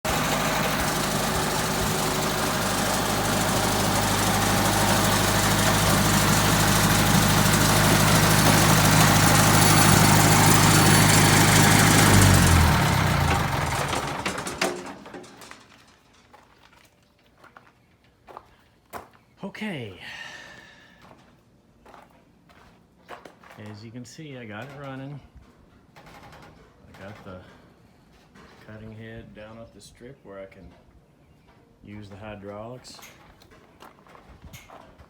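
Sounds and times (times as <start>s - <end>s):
sawmill engine running: 0.0s - 15.9s.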